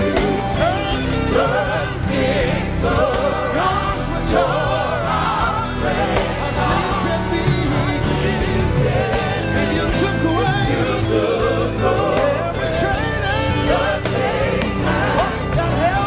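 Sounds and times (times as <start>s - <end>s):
bass and drums: 0.0s - 16.0s
choir singing gospel music: 0.0s - 16.0s.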